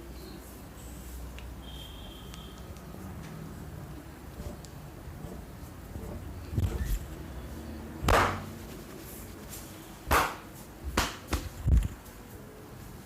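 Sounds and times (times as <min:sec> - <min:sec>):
hand slaps on body: 0:08.1 - 0:08.5, 0:10.1 - 0:11.5.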